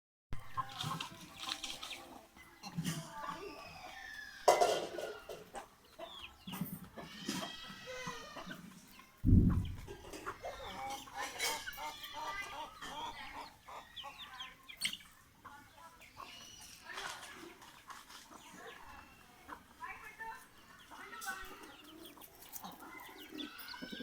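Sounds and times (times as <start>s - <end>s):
chickens clucking: 0.4s - 24.0s
loud dull thump: 9.2s - 10.1s.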